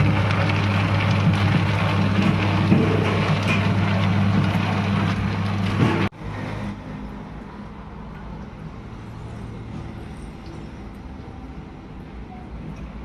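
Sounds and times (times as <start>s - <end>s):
machinery humming and rattling: 0.0s - 7.1s.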